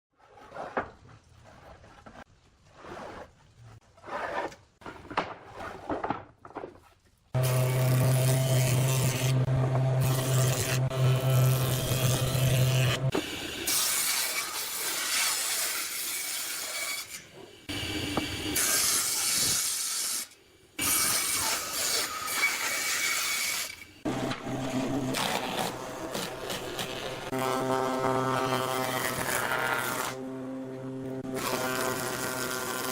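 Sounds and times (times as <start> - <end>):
power tool cutting or sanding: 7.4 - 17.0, 24.8 - 30.2, 31.2 - 32.9.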